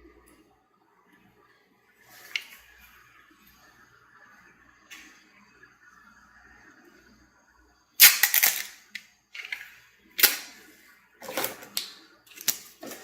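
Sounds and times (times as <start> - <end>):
plastic clicks and clatters: 11.2 - 13.0.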